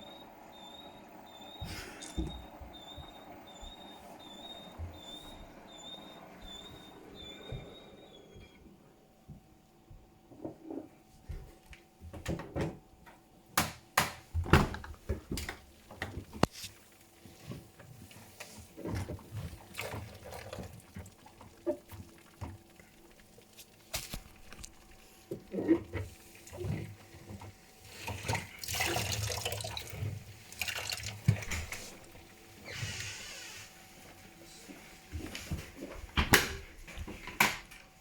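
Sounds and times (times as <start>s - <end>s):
appliance running: 0.0s - 9.0s
knocks clicks and squeaks: 0.6s - 8.7s.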